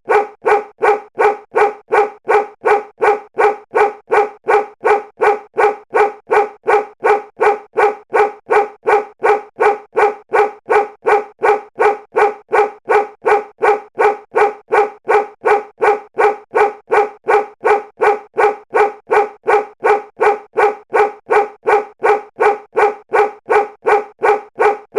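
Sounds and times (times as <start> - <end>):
short pitched bark: 0.1 - 24.9.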